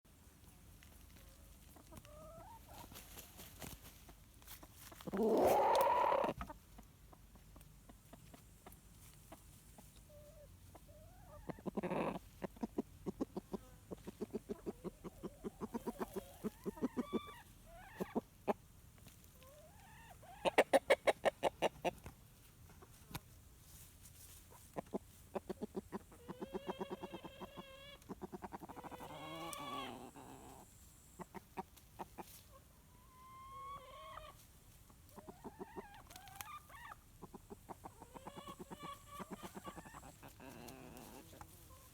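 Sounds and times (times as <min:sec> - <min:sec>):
rooster clucking: 0:04.1 - 0:08.7, 0:10.1 - 0:18.6, 0:19.4 - 0:22.0, 0:24.7 - 0:34.4, 0:35.1 - 0:41.9
chicken whining: 0:05.0 - 0:06.5, 0:10.1 - 0:12.3, 0:14.3 - 0:18.2, 0:25.6 - 0:31.4, 0:32.9 - 0:34.4, 0:35.2 - 0:41.9.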